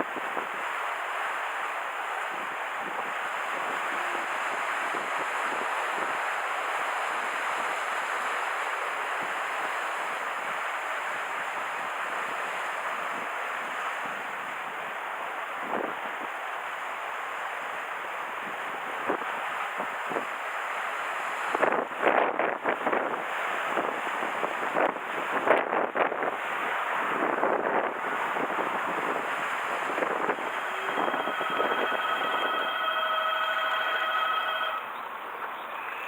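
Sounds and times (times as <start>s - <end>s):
waves washing on shore: 0.0s - 34.8s
wind buffeting microphone: 21.5s - 33.6s.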